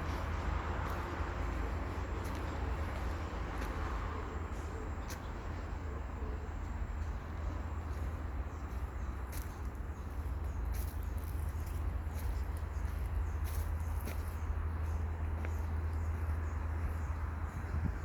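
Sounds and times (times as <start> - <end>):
wind rumbling on microphone: 15.7 - 18.0.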